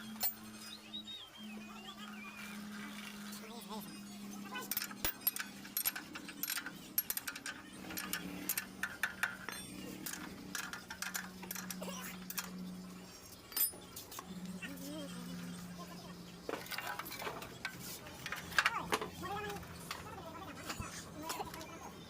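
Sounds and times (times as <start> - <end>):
steady low hum: 0.0 - 22.0
metallic clinks of hand tools: 4.5 - 12.8, 13.4 - 14.0.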